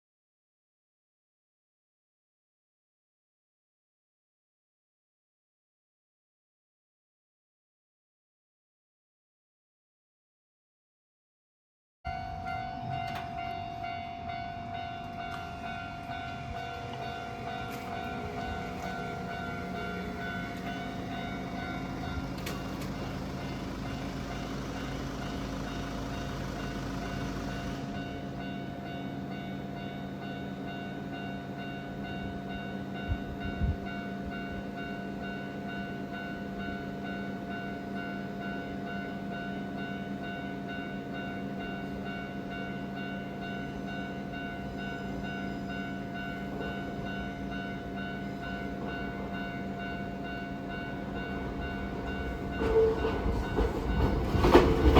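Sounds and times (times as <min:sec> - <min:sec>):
level crossing alarm bell: 0:12.1 - 0:54.9.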